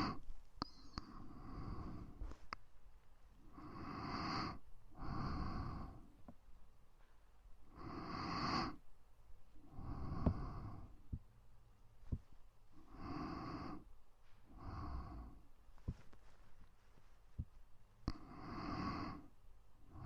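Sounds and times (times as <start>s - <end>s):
slow soft breathing: 0.0s - 2.6s, 3.4s - 6.4s, 9.6s - 11.3s, 12.0s - 20.0s.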